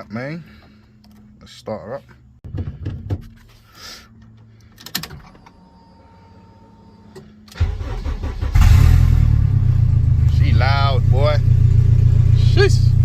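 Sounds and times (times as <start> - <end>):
faint steady whine: 3.5 - 7.5
turbocharged car engine running: 8.5 - 13.0.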